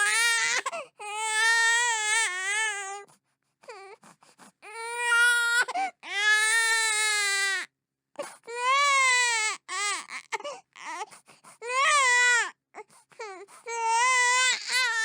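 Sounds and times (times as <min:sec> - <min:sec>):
baby crying: 0:00.0 - 0:03.0, 0:04.6 - 0:07.6, 0:13.2 - 0:15.0.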